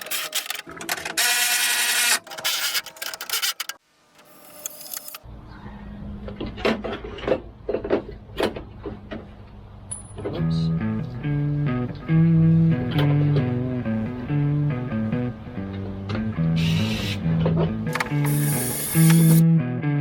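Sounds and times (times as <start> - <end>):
music with bass and guitar: 10.3 - 20.0
power tool tightening bolts: 18.0 - 19.4.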